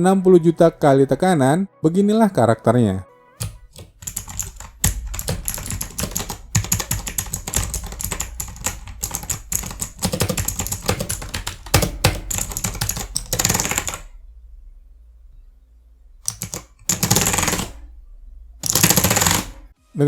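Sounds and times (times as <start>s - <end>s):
mechanical keyboard typing: 3.4s - 14.1s, 16.2s - 17.8s, 18.6s - 19.7s.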